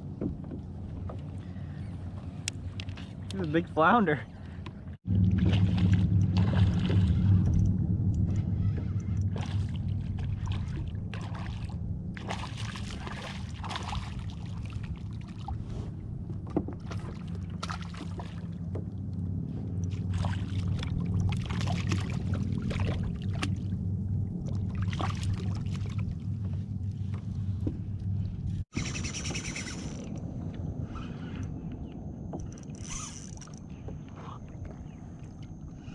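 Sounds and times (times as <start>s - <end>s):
knocks on boat: 0.0s - 1.2s
boat motor humming: 0.0s - 35.9s.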